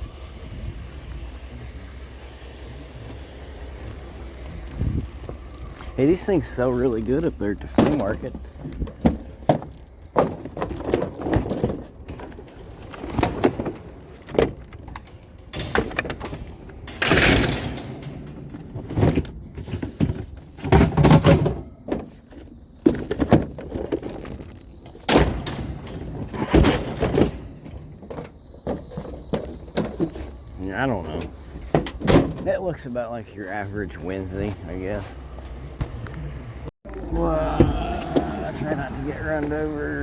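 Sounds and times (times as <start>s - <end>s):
scrap knocks and thumps: 7.7s - 15.1s.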